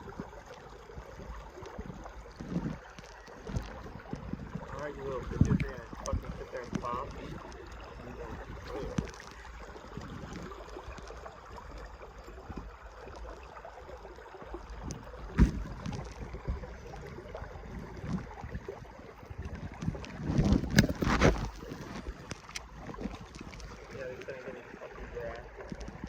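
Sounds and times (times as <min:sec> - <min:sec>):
stream flowing: 0:00.0 - 0:26.0
wind noise on microphone: 0:01.2 - 0:10.6, 0:14.8 - 0:23.8
low bumps: 0:15.2 - 0:16.8.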